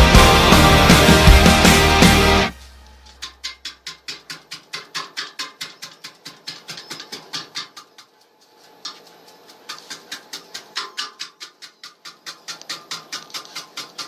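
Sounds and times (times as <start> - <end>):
rapid regular clicking: 3.0 - 14.0.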